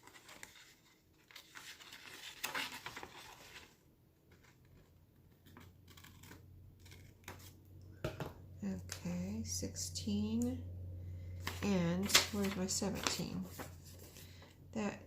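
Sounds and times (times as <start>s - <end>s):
paper rustling: 0.0s - 7.6s, 11.4s - 14.4s.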